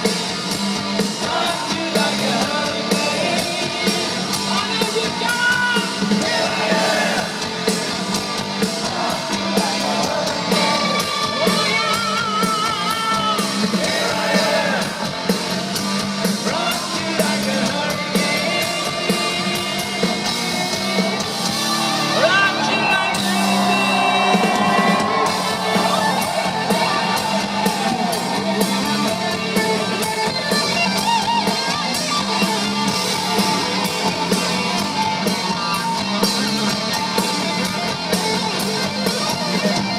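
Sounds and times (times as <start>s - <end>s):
drum kit: 0.0s - 39.9s
electric guitars: 0.0s - 39.9s
person singing and shouting: 1.2s - 7.4s, 8.8s - 15.0s, 22.0s - 30.4s.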